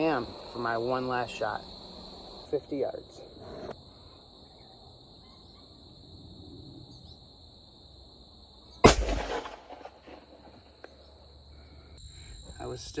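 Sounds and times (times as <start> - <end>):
crickets chirping: 0.0 - 13.0
loud gunshot echoing: 8.8 - 10.6.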